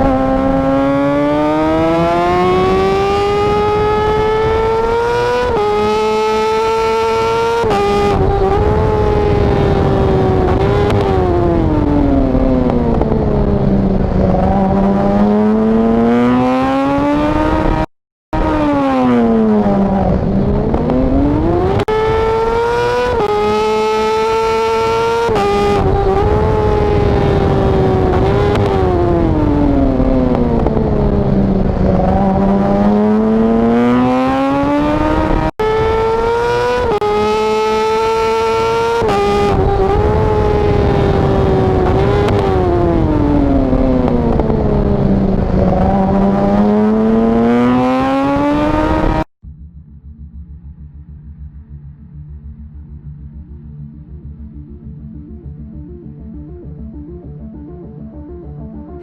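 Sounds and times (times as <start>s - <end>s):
motorcycle engine screaming at high revs: 0.0s - 49.3s.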